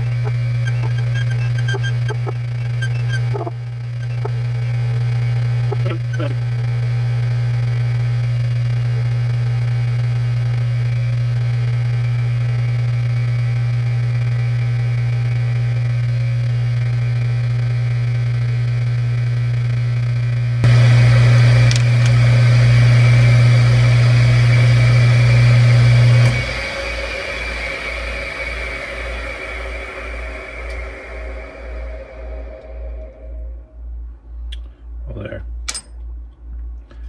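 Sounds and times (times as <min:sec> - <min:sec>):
parting tool cutting metal: 0:00.0 - 0:04.4
metal lathe humming: 0:00.0 - 0:07.3, 0:20.6 - 0:33.6.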